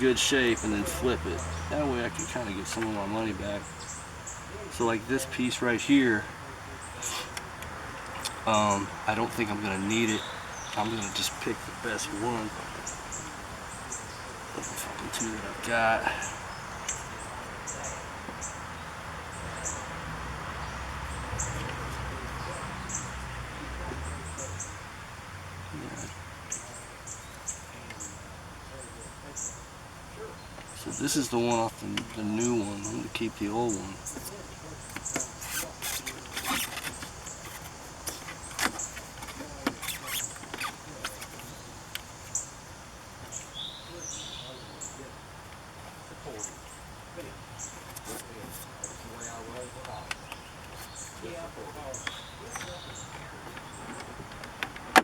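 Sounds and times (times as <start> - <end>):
steady background hiss: 0.0 - 55.0
small bird chirping: 25.6 - 54.3
plastic clicks and knocks: 52.0 - 55.0.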